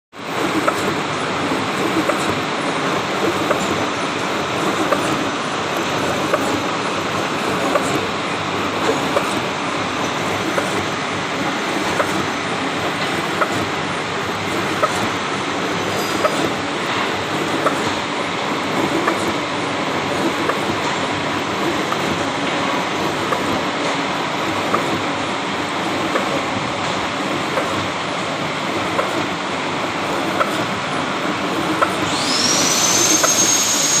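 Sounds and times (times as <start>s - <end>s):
high machine whine: 0.2s - 34.0s
milling machine cutting steel: 0.3s - 22.2s, 31.4s - 34.0s.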